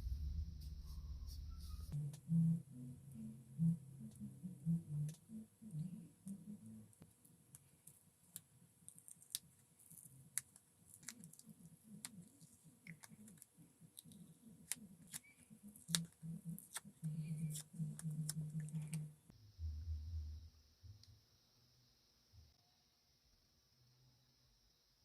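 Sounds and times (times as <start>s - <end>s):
low pulsing hum: 0.0s - 7.0s, 15.7s - 20.6s.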